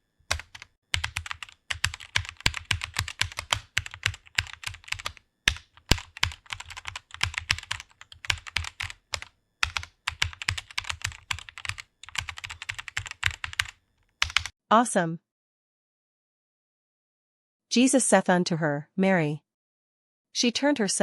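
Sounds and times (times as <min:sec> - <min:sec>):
fast typing on keyboard: 0:00.3 - 0:14.5.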